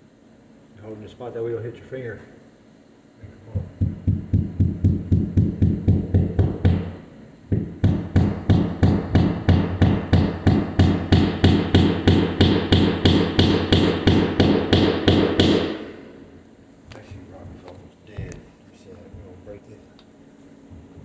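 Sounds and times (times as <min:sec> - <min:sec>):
hammer tapping wall anchor: 0:03.6 - 0:15.8.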